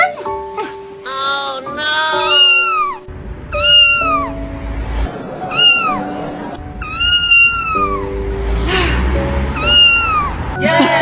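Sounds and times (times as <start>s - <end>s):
faint background music: 0.0s - 11.0s
kitten meowing: 1.1s - 4.4s, 5.3s - 6.2s, 6.8s - 9.0s, 9.6s - 10.5s.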